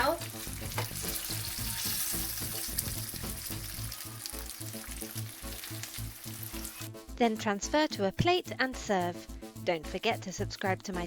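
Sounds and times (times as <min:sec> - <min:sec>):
chicken sizzling in oil: 0:00.0 - 0:07.0
background music with low beat: 0:00.0 - 0:11.0.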